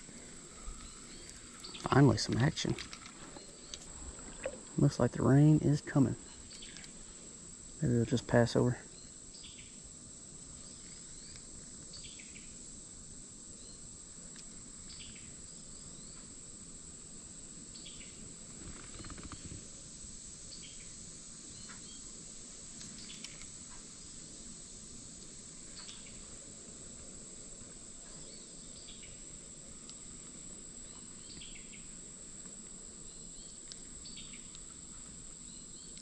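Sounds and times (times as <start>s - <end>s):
bird chirping: 0.0s - 4.5s
insect chorus: 0.0s - 36.0s.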